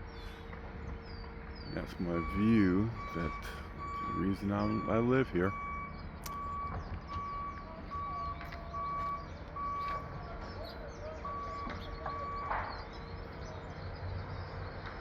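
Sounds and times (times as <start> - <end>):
low engine rumble: 0.0 - 15.0
backup alarm beeps: 1.8 - 12.9.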